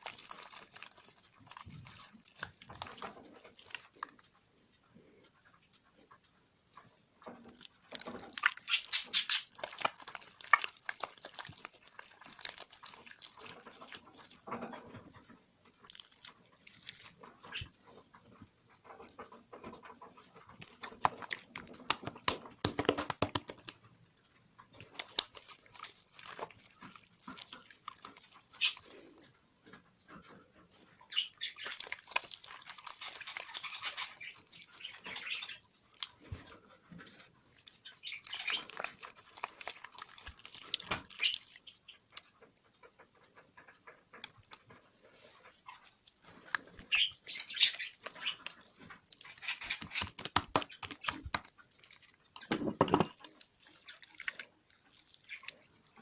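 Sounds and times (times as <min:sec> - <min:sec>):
slime clicks and crackles: 0:00.0 - 0:04.4, 0:07.5 - 0:14.5, 0:15.6 - 0:17.7, 0:20.2 - 0:23.9, 0:24.6 - 0:29.8, 0:30.7 - 0:43.0, 0:43.6 - 0:44.7, 0:45.5 - 0:52.6
slime squelching by hand: 0:00.0 - 0:05.2, 0:07.3 - 0:56.0.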